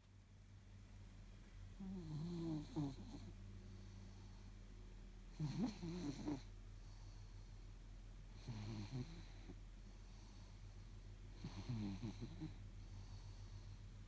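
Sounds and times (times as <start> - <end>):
snoring: 1.8 - 3.3, 5.3 - 6.5, 8.4 - 9.6, 11.3 - 13.2.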